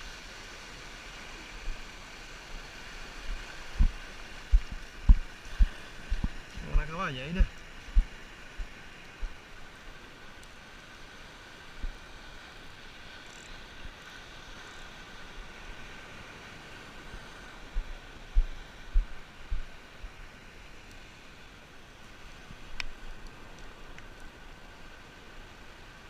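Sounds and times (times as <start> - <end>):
steady outdoor hiss: 0.0 - 26.0
low thumps on microphone: 3.8 - 6.4.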